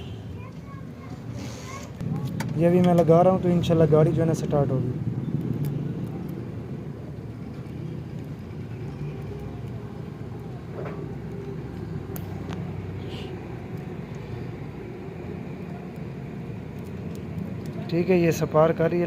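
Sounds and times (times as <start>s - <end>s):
low vehicle rumble: 4.8s - 18.9s.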